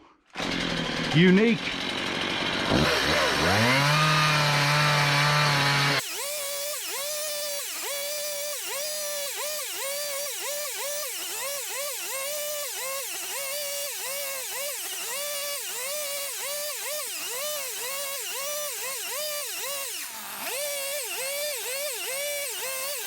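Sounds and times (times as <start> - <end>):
power tool cutting wood: 0.3 - 23.0.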